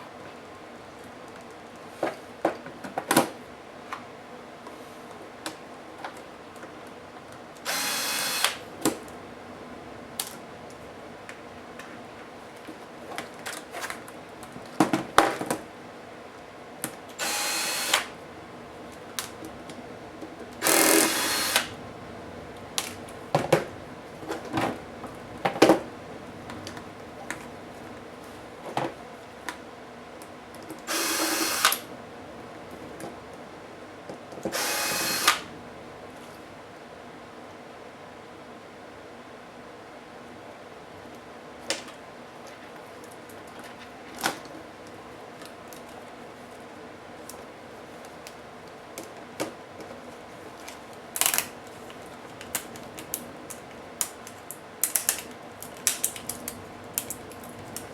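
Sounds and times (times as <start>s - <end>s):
electric screwdriver whirring: 7.6s - 8.6s, 17.2s - 18.1s, 20.6s - 21.8s, 30.9s - 31.9s, 34.5s - 35.5s.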